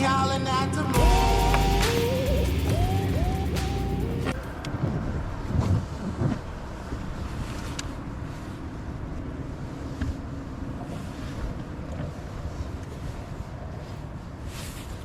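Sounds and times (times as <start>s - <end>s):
wind noise on microphone: 2.0s - 8.8s.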